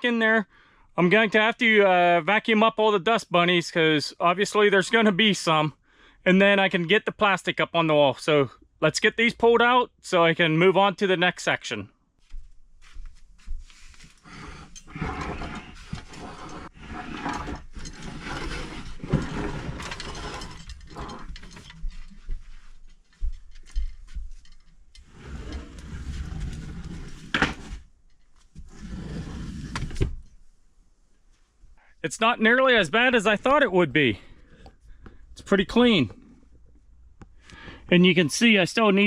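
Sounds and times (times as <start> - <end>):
clothes racks scraping and rattling: 13.6 - 30.4.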